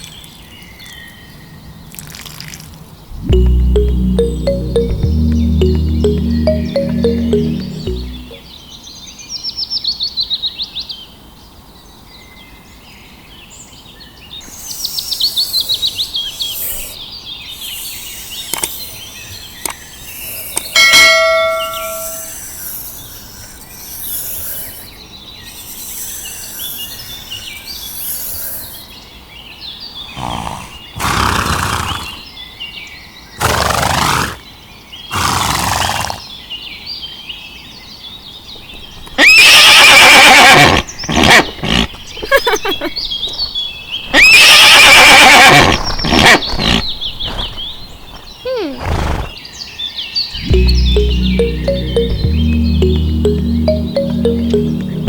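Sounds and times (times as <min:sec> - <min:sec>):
bell-like ding: 0:03.2 - 0:08.4, 0:20.8 - 0:22.3.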